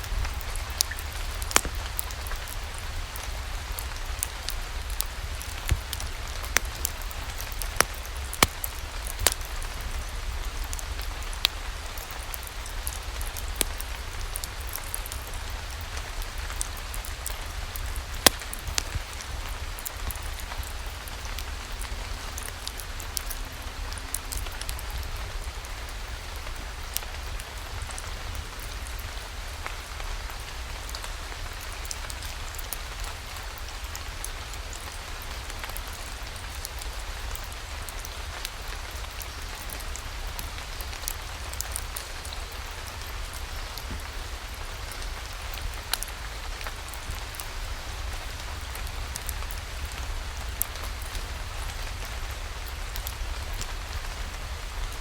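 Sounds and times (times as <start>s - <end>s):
steady rain falling: 0.0s - 55.0s
sharp clicks and pops: 0.8s - 2.3s, 5.5s - 9.5s, 18.1s - 19.1s.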